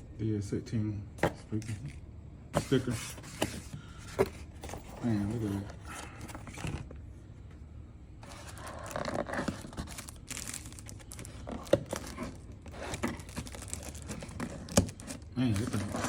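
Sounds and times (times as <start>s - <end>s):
packaging crinkling and tearing: 8.2s - 16.0s.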